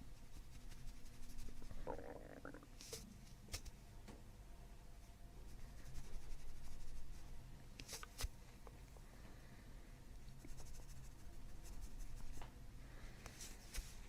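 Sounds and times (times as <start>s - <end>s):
stomach gurgling and rumbling: 1.6s - 2.8s.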